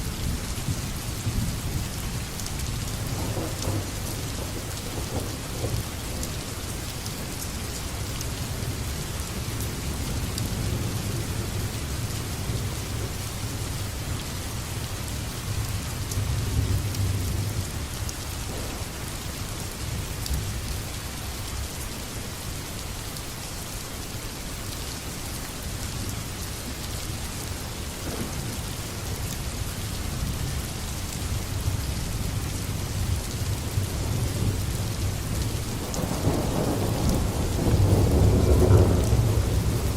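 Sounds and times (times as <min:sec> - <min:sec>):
heavy rain falling: 0:00.0 - 0:39.9
thunder rumbling: 0:03.0 - 0:06.3, 0:18.4 - 0:20.0, 0:28.0 - 0:28.8, 0:32.9 - 0:39.9.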